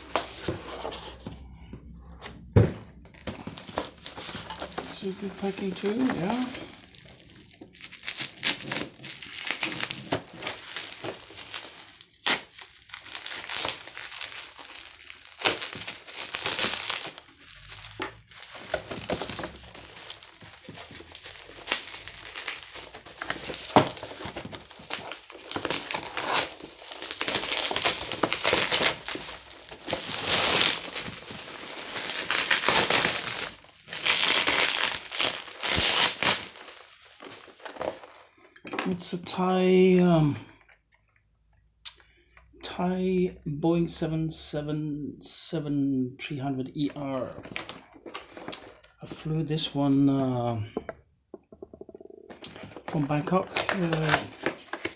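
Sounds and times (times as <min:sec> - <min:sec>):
packaging crinkling: 0:03.0 - 0:38.9, 0:46.9 - 0:49.2, 0:51.6 - 0:54.9
packaging tearing: 0:03.2 - 0:38.2, 0:52.2 - 0:54.9.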